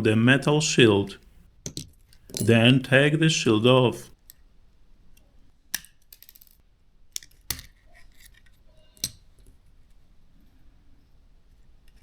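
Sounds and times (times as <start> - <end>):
small parts clicking and tapping: 5.1 - 9.6.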